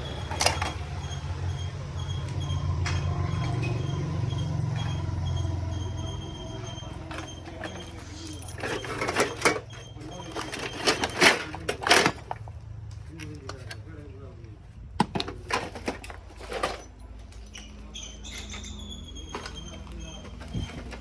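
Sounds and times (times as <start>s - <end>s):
vehicle engine rumble passing: 0.0s - 15.0s.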